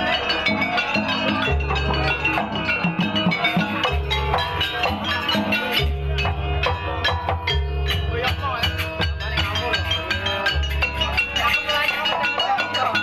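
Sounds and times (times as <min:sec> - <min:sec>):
bronze metallophones playing: 0:00.0 - 0:13.0
hand drums: 0:00.0 - 0:13.0.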